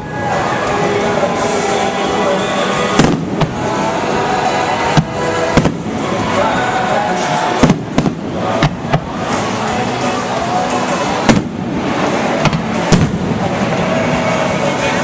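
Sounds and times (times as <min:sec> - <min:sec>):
music playing: 0:00.0 - 0:15.0
fireworks banging: 0:02.6 - 0:06.4, 0:07.2 - 0:09.9, 0:10.7 - 0:14.5.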